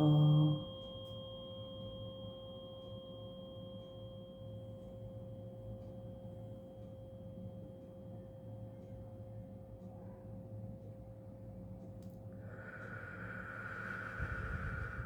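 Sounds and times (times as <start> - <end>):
tuning fork ringing: 0.0 - 9.0.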